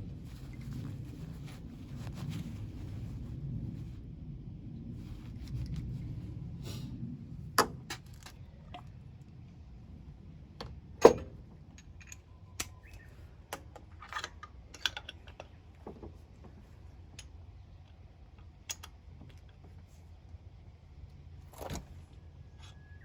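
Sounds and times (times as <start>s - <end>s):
low rumble: 0.0s - 11.0s.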